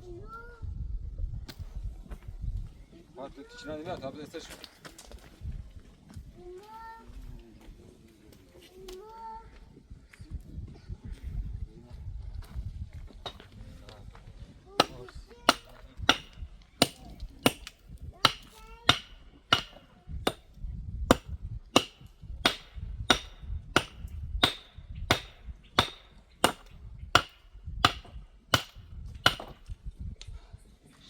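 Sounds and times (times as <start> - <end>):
hand tool striking wood: 14.8 - 20.5, 21.1 - 29.7.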